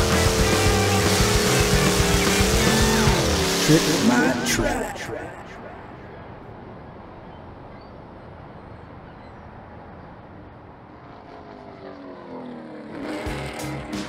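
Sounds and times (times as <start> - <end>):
race car engines rumbling: 0.0 - 6.6, 9.9 - 14.0.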